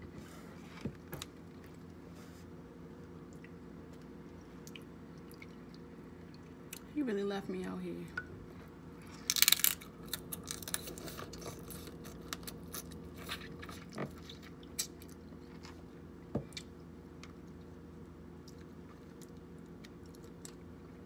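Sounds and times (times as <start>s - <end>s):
faint low hum: 0.0s - 21.0s
crab shell crunching and chewing: 8.6s - 15.9s, 18.4s - 21.0s.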